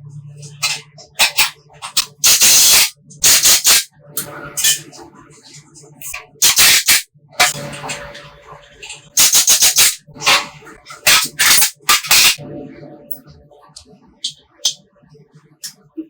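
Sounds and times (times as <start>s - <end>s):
spray can clicks and rattles: 0.6s - 3.9s, 6.4s - 7.6s, 9.2s - 10.0s, 11.0s - 12.4s.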